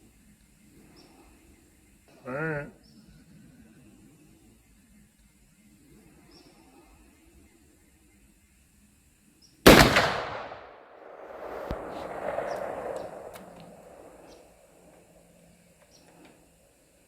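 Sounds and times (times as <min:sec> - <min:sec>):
revolver gunshot: 0:09.7 - 0:14.8
dull swell of noise: 0:10.3 - 0:14.9.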